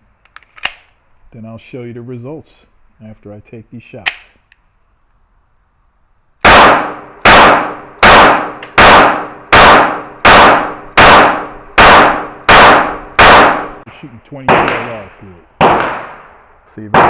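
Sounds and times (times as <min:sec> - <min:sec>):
gunshots with echo: 0:06.4 - 0:13.8, 0:14.4 - 0:17.0.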